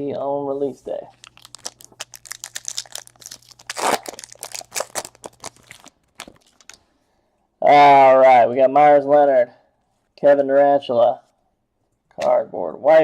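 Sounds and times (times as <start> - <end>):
foil wrapper tearing and crinkling: 1.2 - 6.8.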